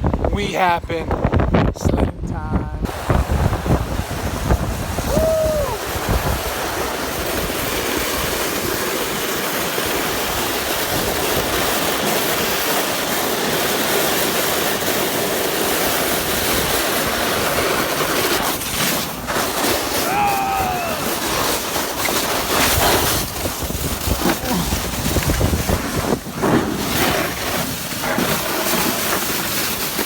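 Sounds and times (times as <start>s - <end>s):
wind on microphone: 0.0s - 9.2s, 19.8s - 28.6s
person yelling: 5.0s - 5.8s, 20.0s - 21.3s
sled runners scraping over ice: 5.8s - 30.0s.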